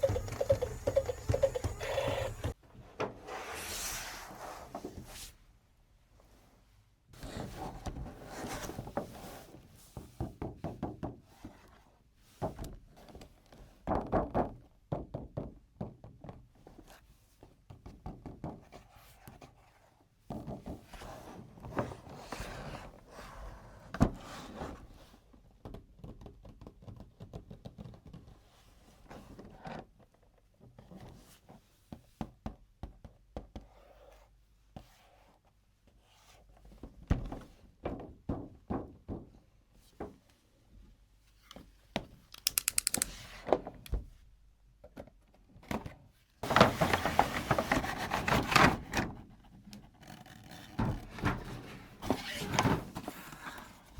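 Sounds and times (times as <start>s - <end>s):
plastic toys knocking and clicking: 0.0s - 2.6s, 42.3s - 43.2s.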